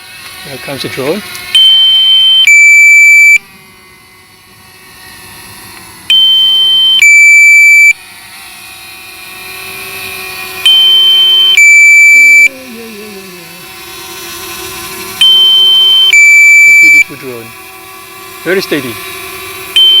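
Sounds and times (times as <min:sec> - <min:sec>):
electronic two-tone alarm: 0:01.6 - 0:03.5, 0:06.1 - 0:08.0, 0:10.6 - 0:12.6, 0:15.2 - 0:17.1, 0:19.7 - 0:20.0.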